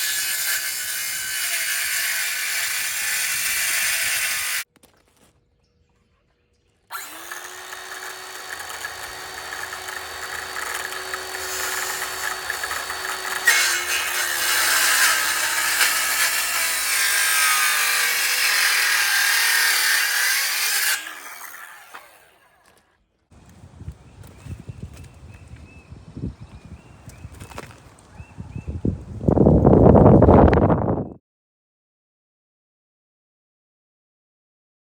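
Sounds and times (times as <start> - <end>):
power saw cutting wood: 0.0 - 4.7, 6.9 - 22.8.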